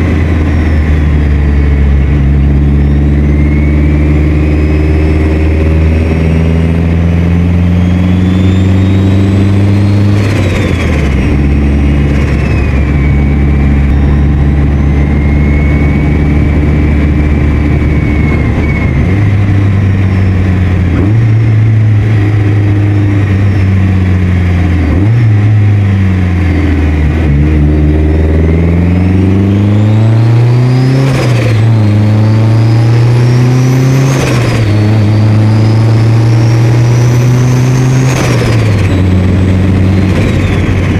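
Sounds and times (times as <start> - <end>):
turbo whistle: 0.0 - 6.2, 7.5 - 23.6
car engine pulling under boost: 0.0 - 40.9.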